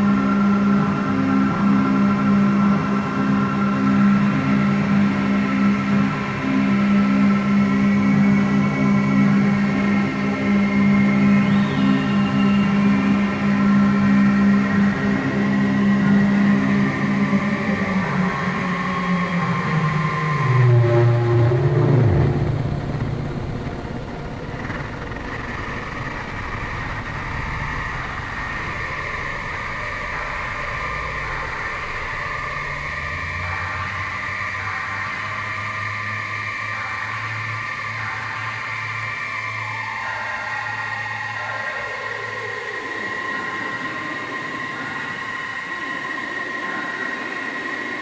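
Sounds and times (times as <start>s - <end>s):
synthesizer drone: 0.0s - 48.0s.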